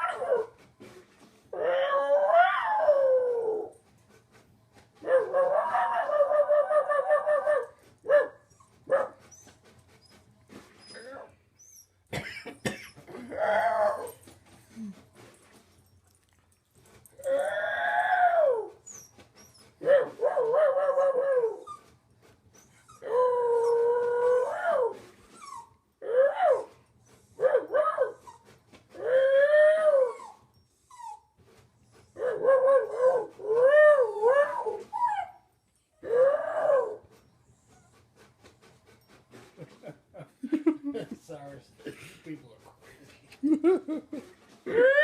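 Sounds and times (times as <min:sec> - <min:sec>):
dog howling: 0:01.6 - 0:03.7, 0:05.0 - 0:07.7, 0:17.2 - 0:18.8, 0:36.0 - 0:37.0, 0:44.7 - 0:45.0.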